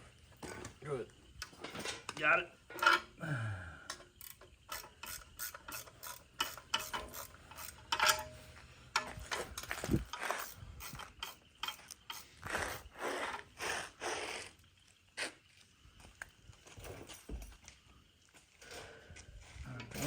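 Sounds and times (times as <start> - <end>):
ratchet wrench clicking: 4.2 - 8.3, 9.0 - 12.3
metal scraping: 4.7 - 12.8.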